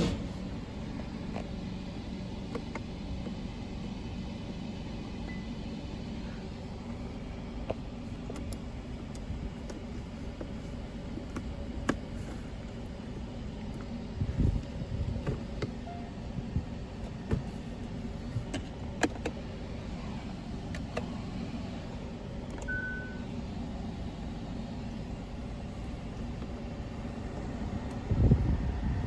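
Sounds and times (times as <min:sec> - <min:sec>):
car engine idling: 0:00.0 - 0:29.0
short beep: 0:22.7 - 0:23.2.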